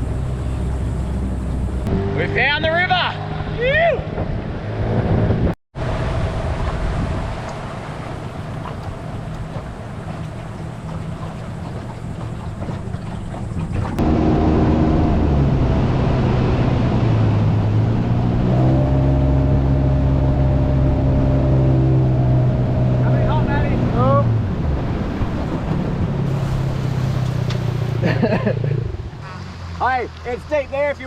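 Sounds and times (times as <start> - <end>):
water noise: 0.0 - 31.0
wind noise: 3.2 - 28.0
outboard motor running: 5.8 - 29.7.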